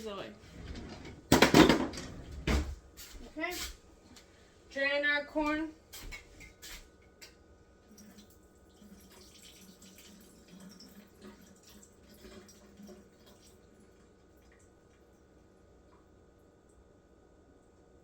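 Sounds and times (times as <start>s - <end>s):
liquid trickling and dripping: 7.8s - 16.8s.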